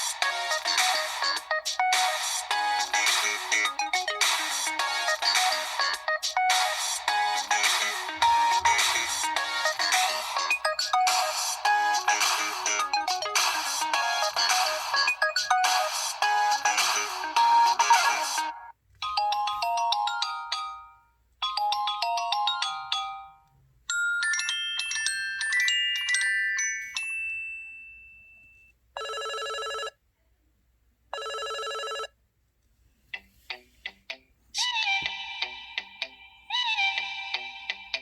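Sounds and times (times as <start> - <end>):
bell-like ringtone melody: 0.0 - 29.9
phone ringtone chime melody: 0.0 - 29.9, 31.2 - 32.1.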